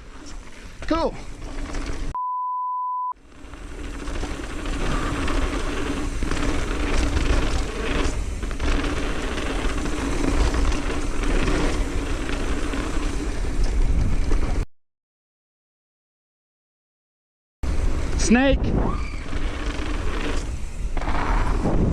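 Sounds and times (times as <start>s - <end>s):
bike trail noise: 0.0s - 2.2s, 3.2s - 14.7s, 17.6s - 21.9s
wind rush: 17.7s - 21.9s.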